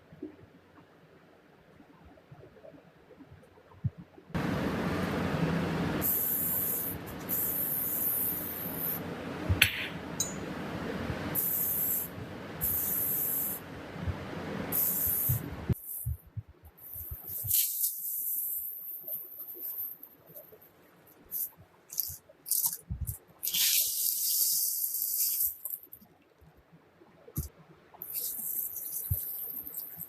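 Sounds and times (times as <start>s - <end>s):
hissing spray bursts: 6.0s - 9.1s, 11.3s - 13.6s, 14.7s - 16.2s, 16.9s - 20.0s, 23.4s - 25.7s, 28.0s - 30.0s.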